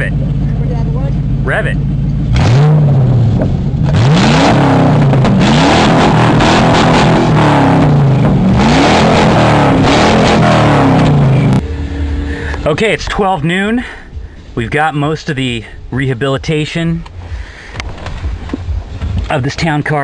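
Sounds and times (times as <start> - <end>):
car engine revving: 0.0 - 19.8.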